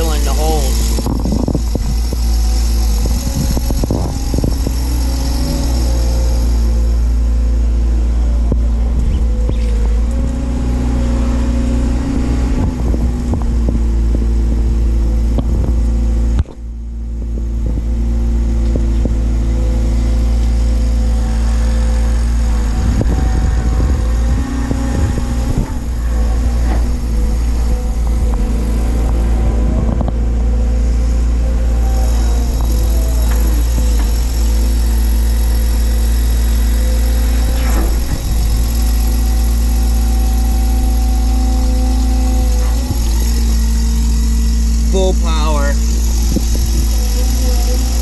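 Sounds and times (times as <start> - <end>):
excavator diesel engine running: 0.0 - 48.0
high whining tones: 19.1 - 48.0.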